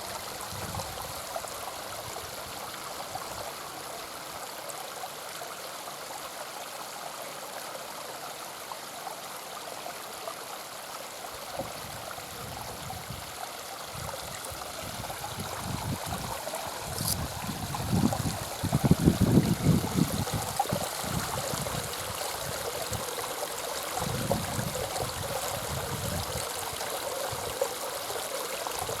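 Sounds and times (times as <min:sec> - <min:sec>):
water splashing into pond: 0:13.9 - 0:29.0.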